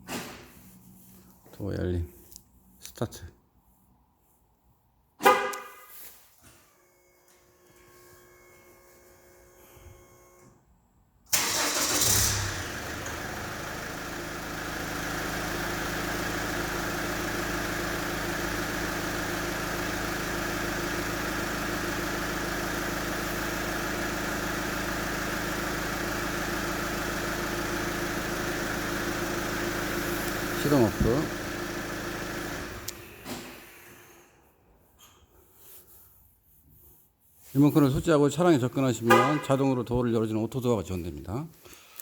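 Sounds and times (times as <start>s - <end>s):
car engine cranking and idling: 11.3s - 33.9s.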